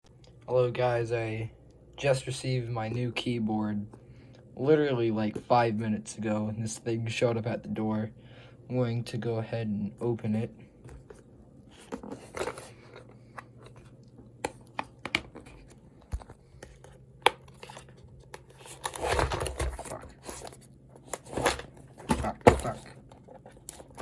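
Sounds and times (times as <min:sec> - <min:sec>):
cardboard scraping and tearing: 0:17.6 - 0:23.0.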